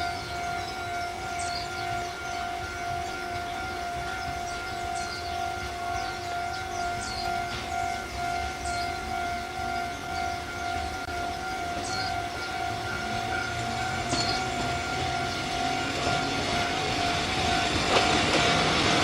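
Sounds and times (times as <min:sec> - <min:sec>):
crossing alarm high tone: 0:00.0 - 0:19.0
train approaching: 0:00.0 - 0:19.0.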